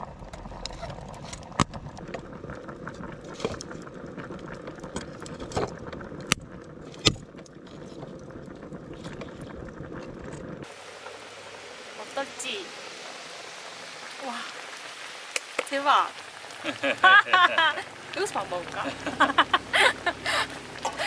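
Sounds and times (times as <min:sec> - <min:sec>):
background hiss: 0:10.6 - 0:21.0.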